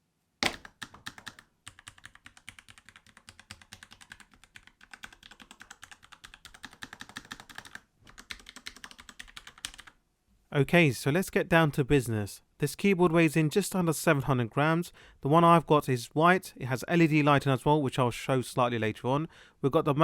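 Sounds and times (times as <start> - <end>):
fast mechanical keyboard typing: 0.4 - 10.0.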